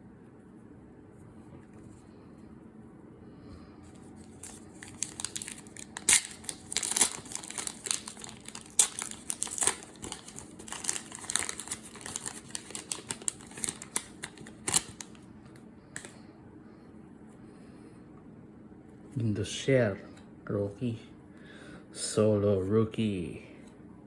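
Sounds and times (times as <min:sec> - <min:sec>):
wrapper tearing and crinkling: 0:04.3 - 0:15.2.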